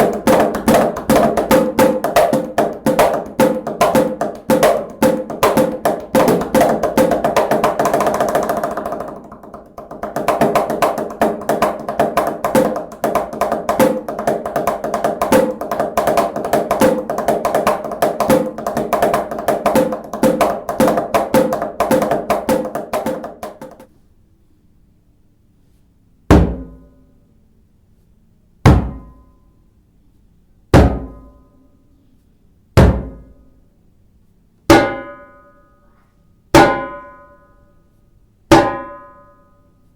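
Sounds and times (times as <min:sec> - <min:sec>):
hand percussion box groove: 0:00.0 - 0:23.9.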